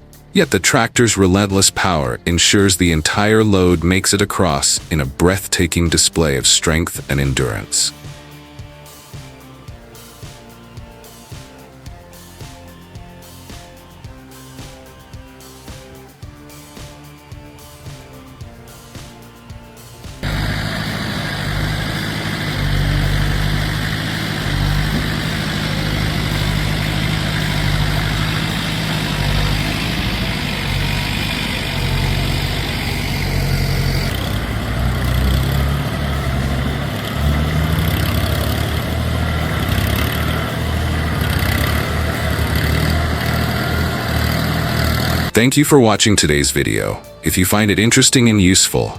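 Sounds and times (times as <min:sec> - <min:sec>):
heavy machine engine humming: 0:19.6 - 0:45.3.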